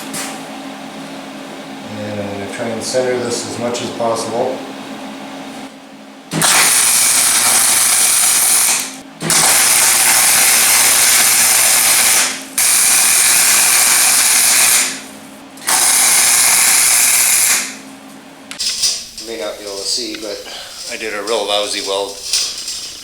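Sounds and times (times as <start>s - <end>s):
arc welding sizzle: 6.3s - 17.9s, 18.5s - 23.0s.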